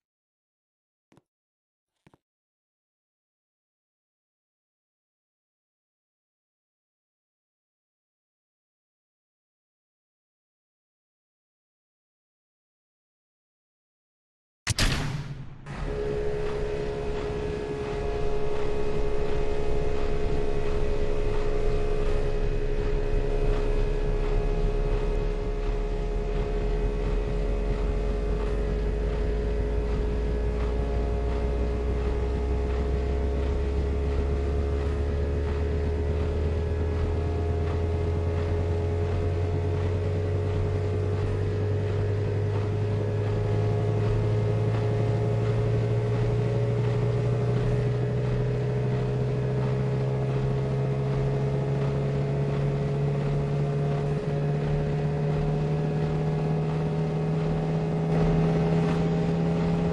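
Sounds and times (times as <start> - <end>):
rising drum spin tone: 14.7 - 59.9
washing machine running: 15.7 - 59.9.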